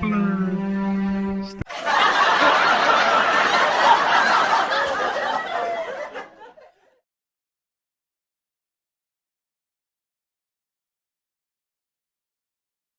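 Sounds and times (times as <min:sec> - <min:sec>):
music: 0:00.0 - 0:01.6
group laughter: 0:01.6 - 0:07.0.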